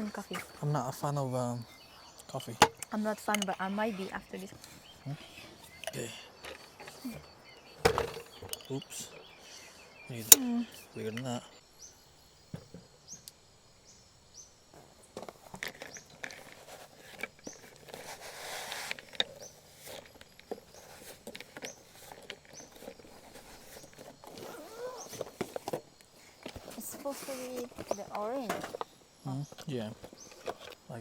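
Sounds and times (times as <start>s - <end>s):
camping gear clicks and knocks: 2.0s - 3.7s, 4.3s - 9.4s, 14.7s - 31.0s
rustling: 14.7s - 31.0s.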